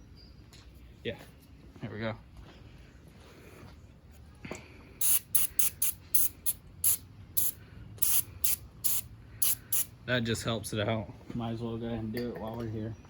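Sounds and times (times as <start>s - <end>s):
spray bottle squirts: 5.0s - 9.9s.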